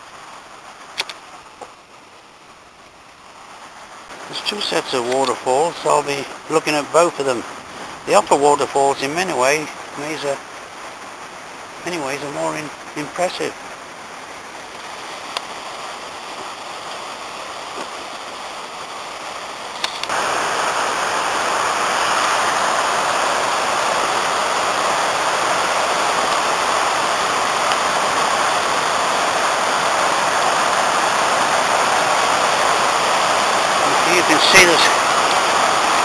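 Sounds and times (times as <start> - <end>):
waterfall rushing: 0.0 - 36.0.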